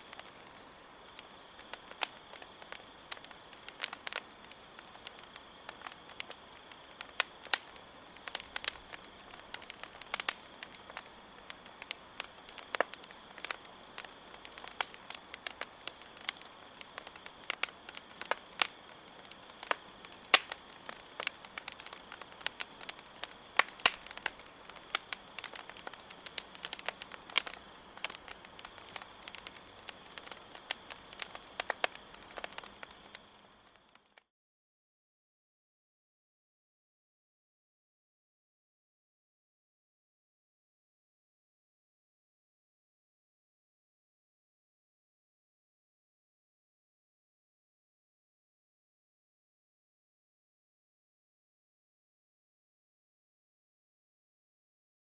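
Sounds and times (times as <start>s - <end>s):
crickets chirring: 0.0s - 34.2s
campfire wood crackling: 0.0s - 34.3s.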